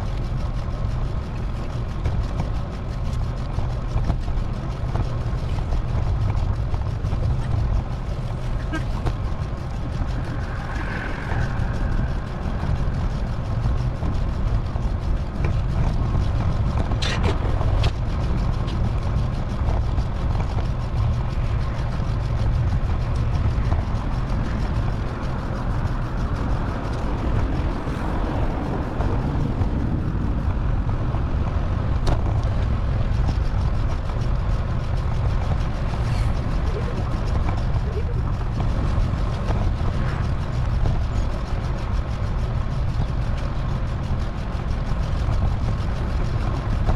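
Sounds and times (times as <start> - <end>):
road and wind noise: 0.0 - 46.9
passing traffic: 7.5 - 16.0, 21.1 - 33.2, 35.0 - 41.6.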